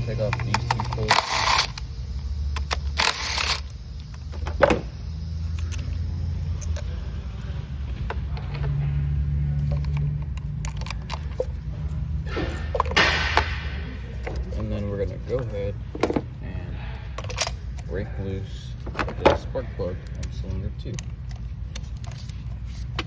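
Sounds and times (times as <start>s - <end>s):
steady low hum: 0.0s - 23.0s
power tool whirring: 0.2s - 1.9s, 2.6s - 4.8s
tool clicks and metal handling: 9.7s - 11.5s.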